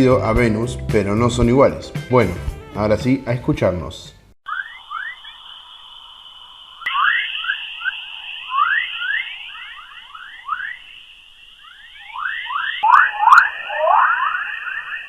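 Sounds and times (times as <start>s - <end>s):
rising whistle-like chirps: 4.4s - 15.0s
steady high hiss: 4.5s - 15.0s.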